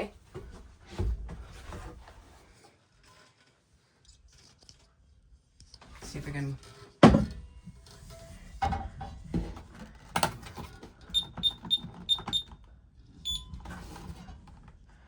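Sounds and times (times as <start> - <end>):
alarm keypad high beeps: 11.2 - 12.5.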